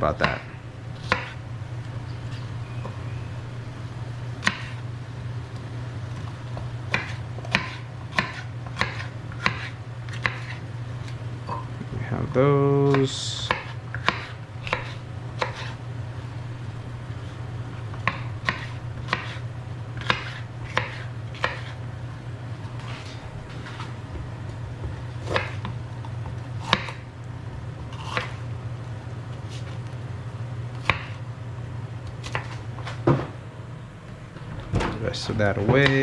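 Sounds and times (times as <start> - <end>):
low hum: 0.0 - 35.7.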